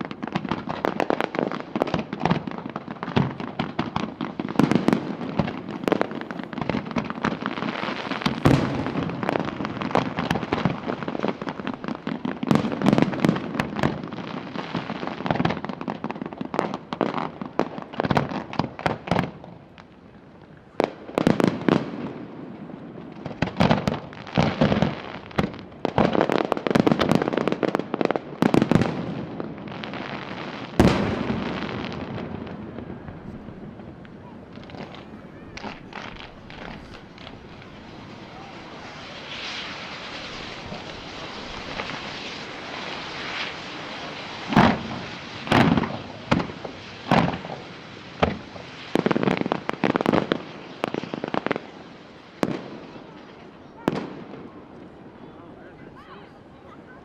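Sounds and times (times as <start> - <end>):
fireworks bursts and crackling: 0.0 - 57.0
loud firework bang: 3.0 - 11.6, 30.7 - 47.6.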